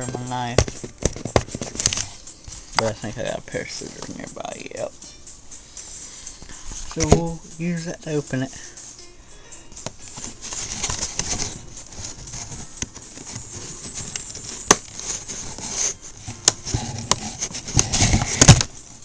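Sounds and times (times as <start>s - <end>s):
packaging rustling: 0.0s - 4.3s, 9.8s - 19.0s
scissors cutting packing tape: 0.7s - 2.3s, 10.1s - 19.0s.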